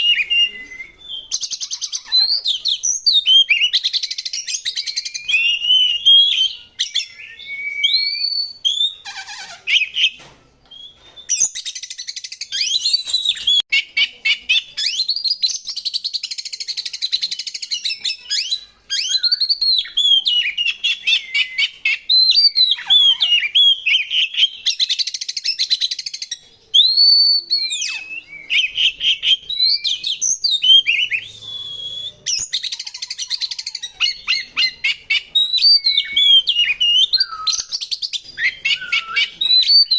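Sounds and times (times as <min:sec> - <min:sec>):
bird singing: 0:00.0 - 0:39.9.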